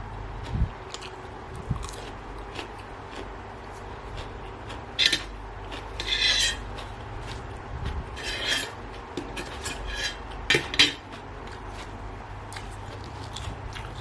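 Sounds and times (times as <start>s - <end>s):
utensil scraping a dish: 5.0s - 6.8s, 8.1s - 11.0s.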